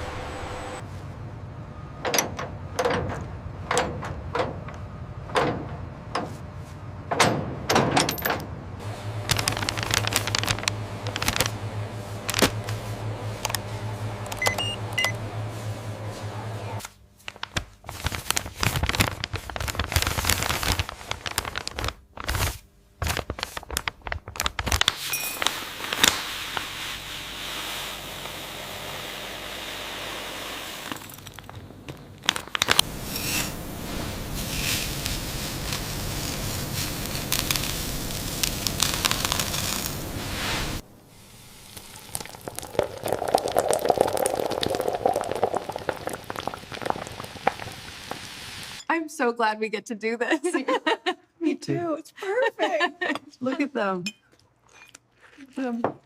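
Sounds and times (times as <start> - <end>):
low machine hum: 0.0 - 7.6, 8.5 - 17.2, 27.9 - 48.8
machinery knocks and clanks: 2.0 - 6.4, 7.0 - 8.6.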